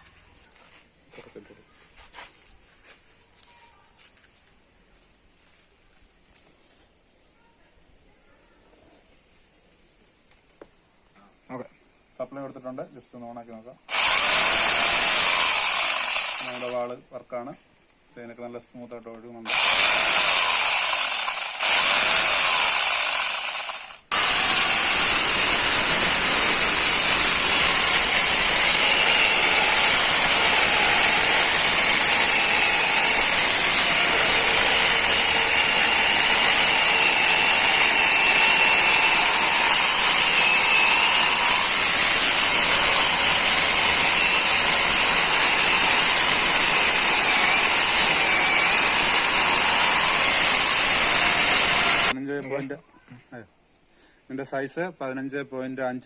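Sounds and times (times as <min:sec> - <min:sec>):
angle grinder chainsaw running: 0:13.9 - 0:16.9, 0:19.4 - 0:52.2.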